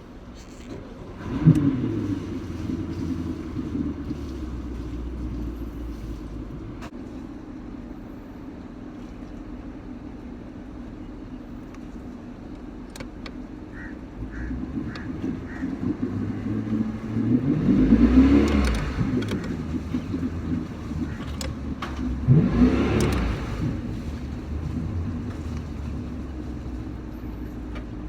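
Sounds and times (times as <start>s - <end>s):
outboard engine idling: 0.0s - 17.1s, 19.0s - 22.3s.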